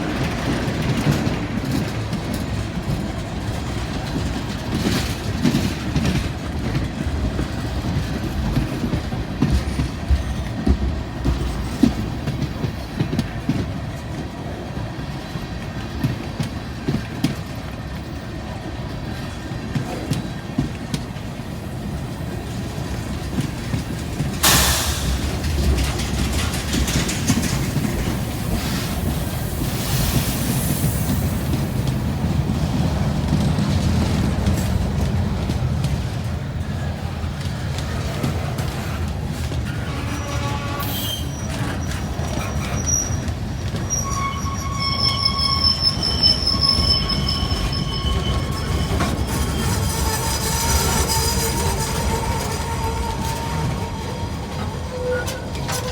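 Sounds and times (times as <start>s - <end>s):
freight train wheels rumbling: 0.0s - 55.9s
wheels clicking over rail joints: 0.0s - 55.9s
wheels squealing: 39.6s - 55.9s.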